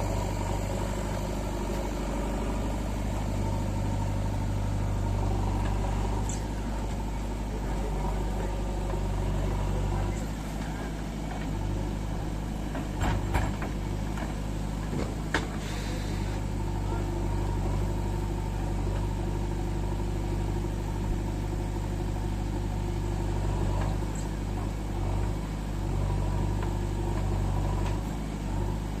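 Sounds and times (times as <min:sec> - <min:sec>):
motor humming: 0:00.0 - 0:11.5.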